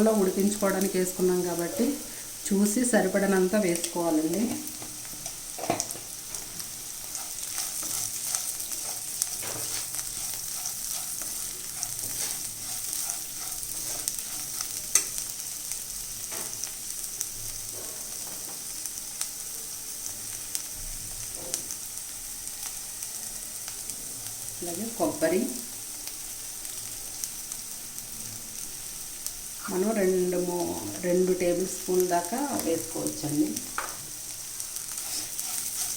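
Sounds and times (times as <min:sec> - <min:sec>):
beans sizzling in a frying pan: 0:00.0 - 0:35.9
utensil scraping a pan: 0:07.0 - 0:14.8, 0:34.8 - 0:35.9.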